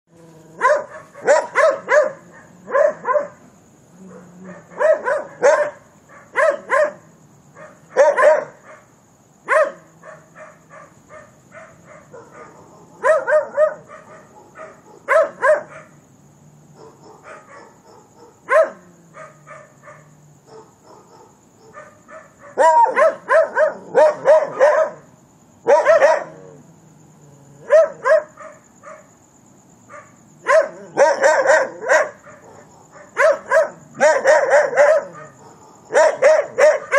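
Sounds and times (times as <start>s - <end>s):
crickets chirring: 0.1s - 36.9s
dogs barking: 0.6s - 3.4s, 4.0s - 16.0s, 16.8s - 26.6s, 27.6s - 29.2s, 29.8s - 36.9s.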